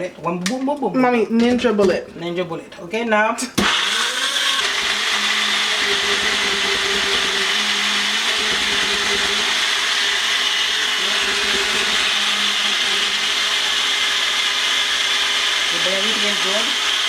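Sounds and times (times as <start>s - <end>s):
blender motor whining: 3.6s - 17.0s.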